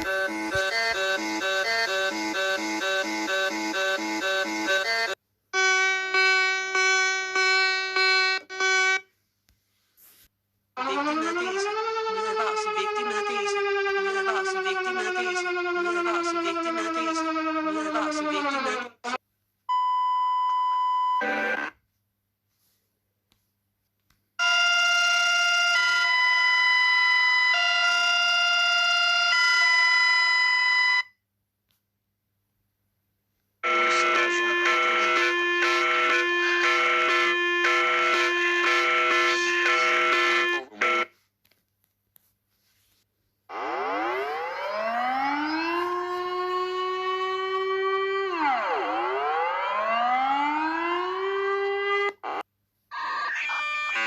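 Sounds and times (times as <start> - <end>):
alternating electronic alarm chord: 0.0 - 9.0, 21.2 - 21.7, 33.6 - 41.1, 43.5 - 52.4
emergency warning siren wailing: 0.0 - 9.0, 10.8 - 19.2, 24.4 - 31.0, 33.6 - 41.1, 43.5 - 54.0.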